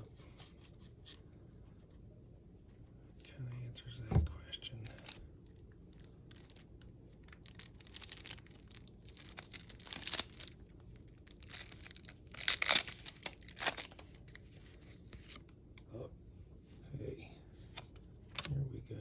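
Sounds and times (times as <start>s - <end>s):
wrapper tearing and crinkling: 4.9s - 14.4s.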